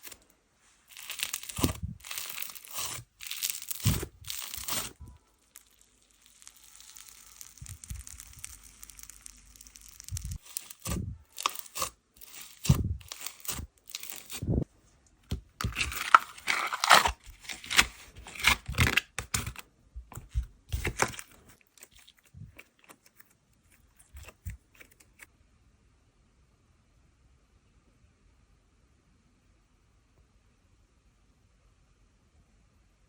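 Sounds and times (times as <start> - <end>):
slime crackling and popping: 0.9 - 14.6, 15.4 - 19.6, 20.2 - 23.3.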